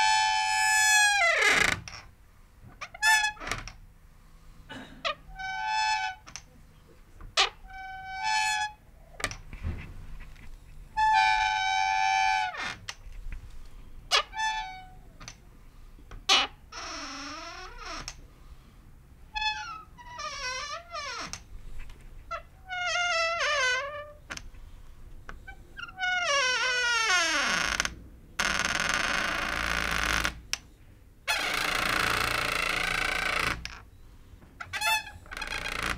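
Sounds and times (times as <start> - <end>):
door hinge squealing: 19.4 - 21.4, 25.5 - 30.4, 31.3 - 33.8, 34.6 - 35.9
door creaking on grinding hinge: 31.3 - 33.8, 34.6 - 35.9.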